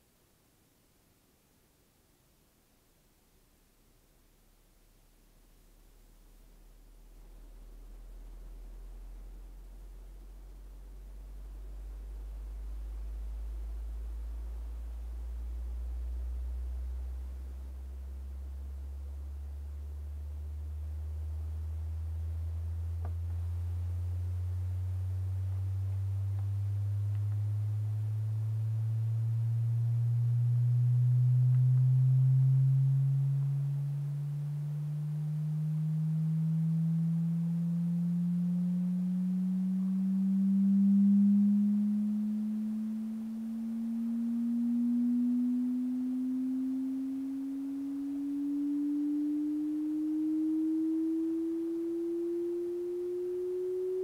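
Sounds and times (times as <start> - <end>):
sine tone sweeping upward: 11.3 - 54.0.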